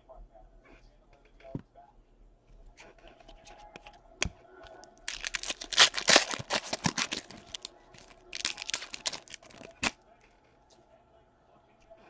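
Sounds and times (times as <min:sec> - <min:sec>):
foil wrapper crinkling and tearing: 0:05.0 - 0:10.0.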